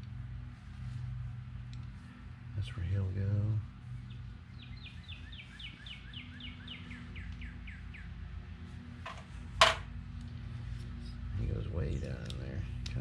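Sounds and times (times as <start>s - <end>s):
low steady hum: 0.0s - 13.0s
songbird singing: 1.6s - 8.7s.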